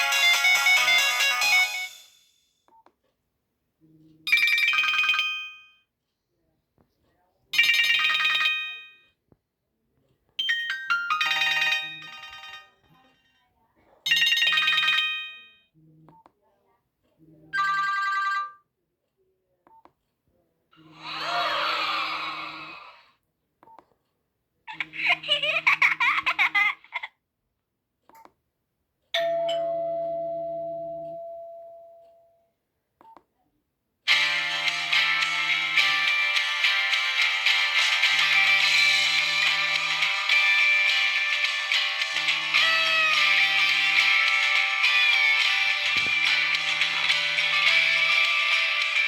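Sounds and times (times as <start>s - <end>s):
warbling phone melody: 0.0s - 2.2s, 34.1s - 49.0s
doorbell-like chime: 29.2s - 32.5s.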